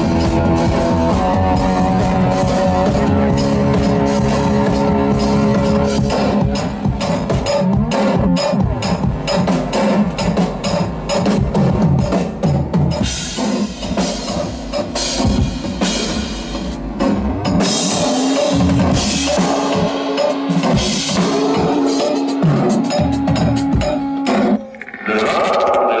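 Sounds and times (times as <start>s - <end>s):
drum kit playing groove: 0.0s - 24.8s
synthesizer: 0.0s - 26.0s
pulsing low synth note: 17.9s - 23.8s.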